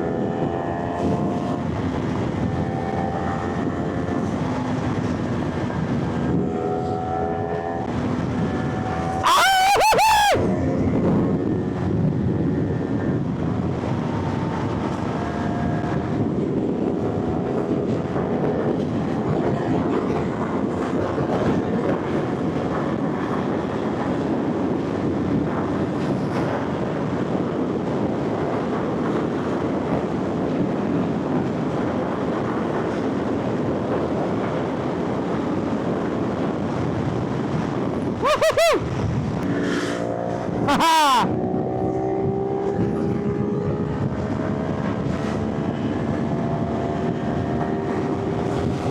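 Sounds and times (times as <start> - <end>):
wind rush on microphone: 0.0 - 48.9.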